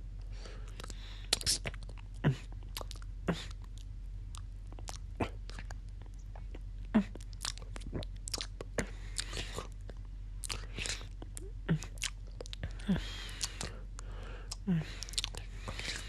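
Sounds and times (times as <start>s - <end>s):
wet mouth clicks and slurps: 0.8s - 2.1s
short throat sounds: 3.2s - 3.6s, 10.5s - 16.0s.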